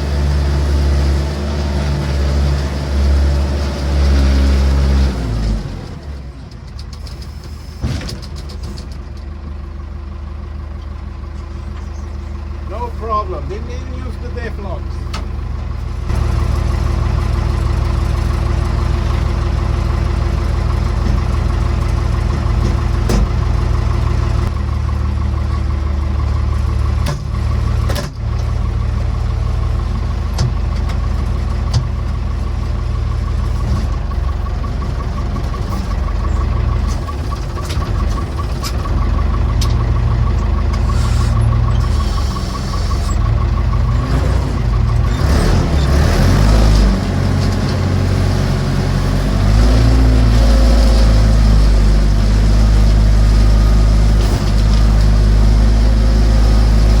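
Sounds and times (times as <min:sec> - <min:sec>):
backhoe engine running under load: 0:00.0 - 0:57.0
sharp knocks and clunks: 0:22.3 - 0:23.5, 0:30.3 - 0:32.1.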